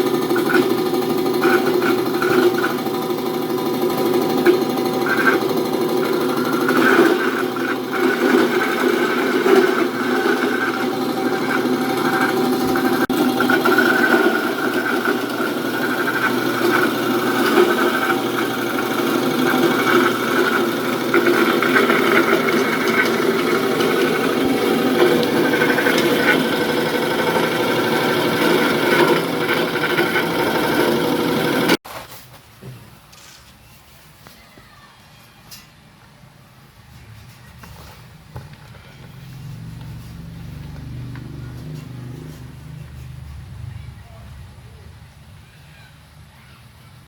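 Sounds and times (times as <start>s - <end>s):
slicing machine droning: 0.0s - 31.8s, 38.8s - 43.7s.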